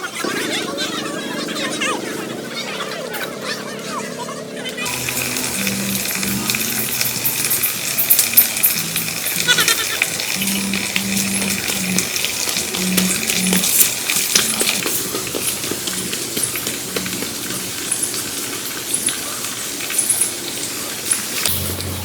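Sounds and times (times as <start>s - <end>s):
hard objects clinking: 4.9s - 18.2s.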